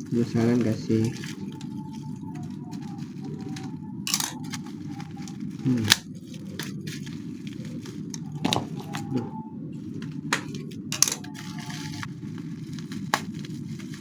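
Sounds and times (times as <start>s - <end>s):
packaging crackling: 0.0s - 9.2s, 9.8s - 14.0s
steady low hum: 0.0s - 14.0s
sharp cracks of packaging: 10.3s - 14.0s.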